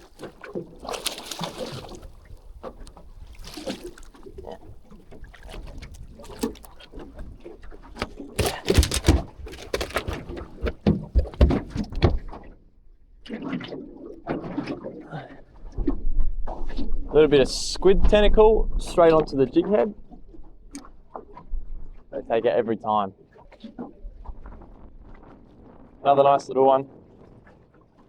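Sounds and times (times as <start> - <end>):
knocks and thumps on boat: 0.0 - 12.6.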